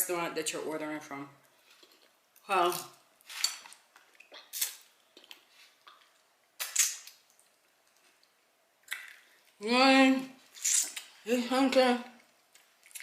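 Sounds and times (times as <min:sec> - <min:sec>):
chewing with wet mouth smacks: 0:12.2 - 0:13.0.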